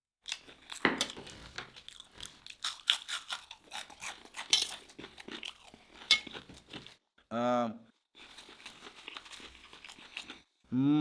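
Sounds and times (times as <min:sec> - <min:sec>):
crunching crispy fried food: 0:08.2 - 0:10.5.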